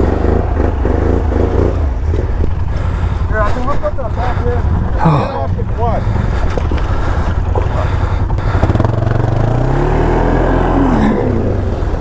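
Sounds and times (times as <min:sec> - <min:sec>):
atv engine under throttle: 0:00.0 - 0:12.0.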